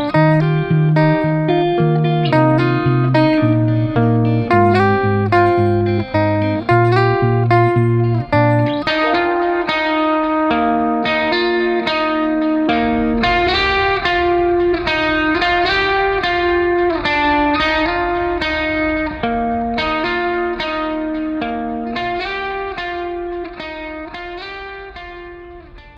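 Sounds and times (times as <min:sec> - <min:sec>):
guitar plucking notes: 0:00.0 - 0:25.9.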